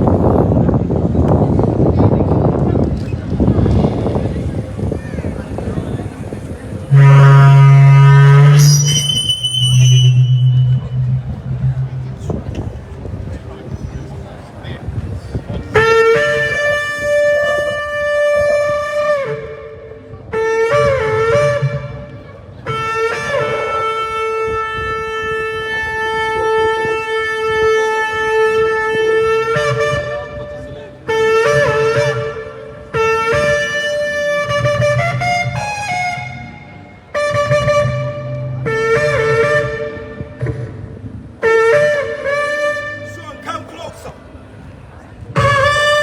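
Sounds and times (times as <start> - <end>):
shofar blasts: 6.8 - 12.4, 15.8 - 40.8, 41.4 - 44.2.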